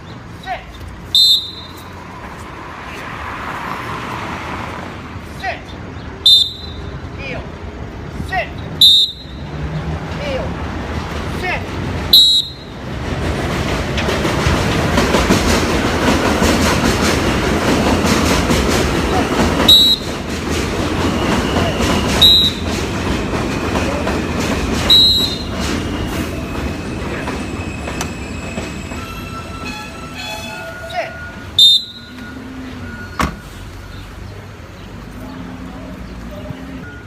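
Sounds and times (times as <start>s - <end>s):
passing train rumble: 0.0s - 37.0s
sharp whistle blasts: 1.1s - 1.9s, 6.2s - 6.9s, 8.8s - 9.5s, 12.1s - 12.8s, 19.6s - 20.2s, 21.6s - 22.8s, 24.8s - 25.7s, 30.2s - 32.3s.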